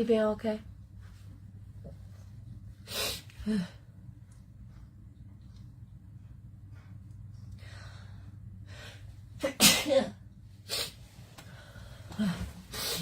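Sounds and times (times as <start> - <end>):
faint breaths: 6.1 - 9.3, 10.9 - 13.0
woman sneezing: 9.4 - 10.2.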